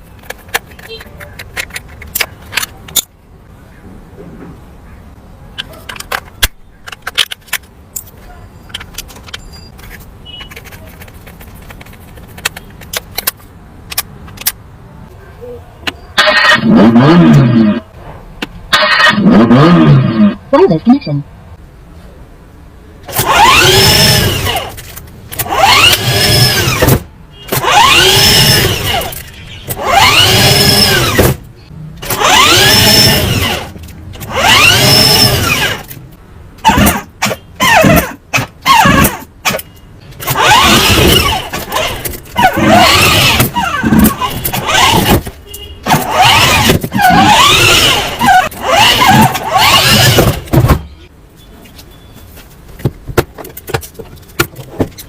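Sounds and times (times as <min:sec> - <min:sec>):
toy car electric motor whining: 0:23.1 - 0:31.4, 0:32.0 - 0:35.9, 0:40.2 - 0:45.3, 0:45.9 - 0:50.5.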